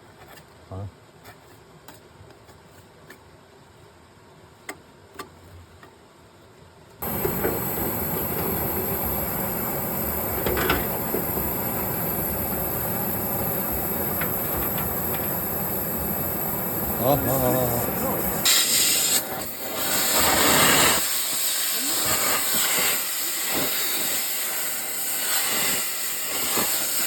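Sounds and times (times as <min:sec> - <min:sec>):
loud machine noise with hiss: 0:07.0 - 0:27.0.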